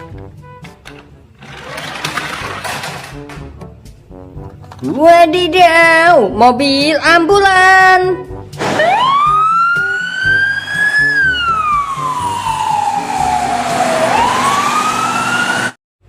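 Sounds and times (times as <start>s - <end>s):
toy siren wailing: 8.8s - 15.7s.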